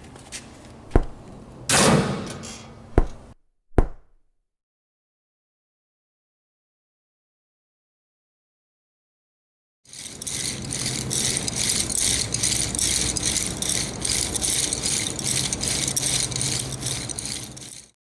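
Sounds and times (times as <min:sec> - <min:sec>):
rhythmic rattling: 0:09.9 - 0:18.0.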